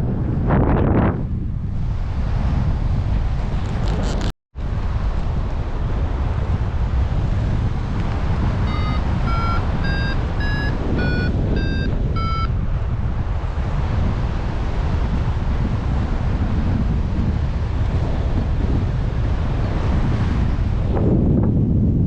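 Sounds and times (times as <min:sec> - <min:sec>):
wind buffeting microphone: 0:00.0 - 0:22.0
variometer beeps: 0:08.6 - 0:12.6.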